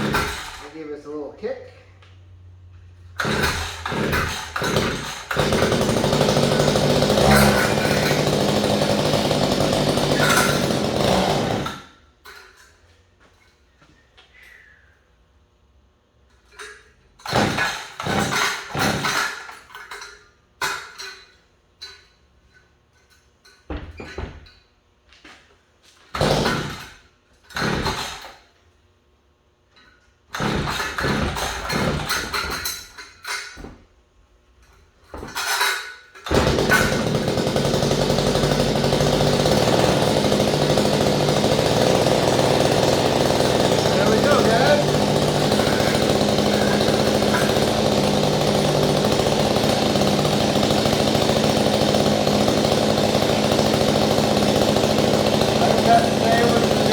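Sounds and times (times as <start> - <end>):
small engine sputtering and running: 0.0 - 0.7, 3.0 - 12.0, 17.2 - 20.0, 26.2 - 28.4, 30.3 - 33.1, 35.4 - 56.9.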